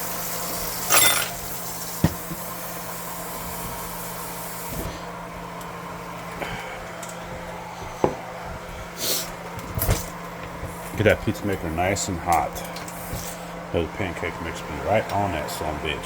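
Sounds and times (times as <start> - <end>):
faucet running into sink: 0.0 - 2.6.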